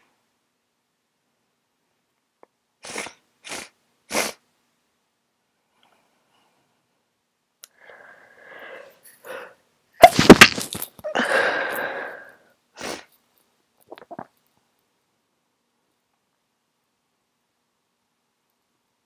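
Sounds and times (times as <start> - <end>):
person sniffing: 2.8 - 4.4, 11.1 - 13.2
stifled sneeze: 2.8 - 4.4, 10.0 - 10.4
person gasping: 7.8 - 9.6, 11.0 - 13.0.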